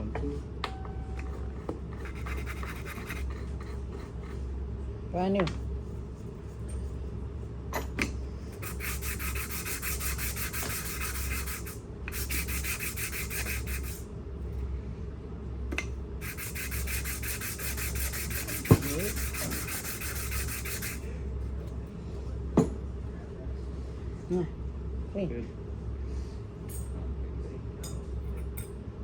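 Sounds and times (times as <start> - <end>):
sandpaper scraping metal part: 2.0 - 4.3, 8.6 - 14.0, 16.2 - 21.0.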